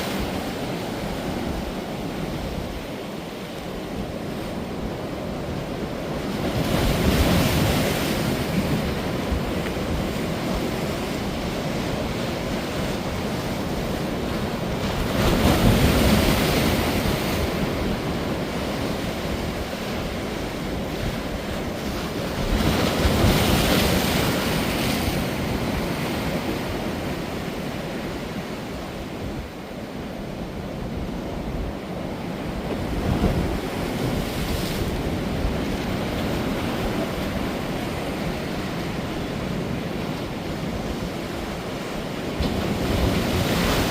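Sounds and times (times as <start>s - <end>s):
ocean waves breaking on beach: 0.0s - 43.9s
wind buffeting microphone: 30.5s - 43.9s.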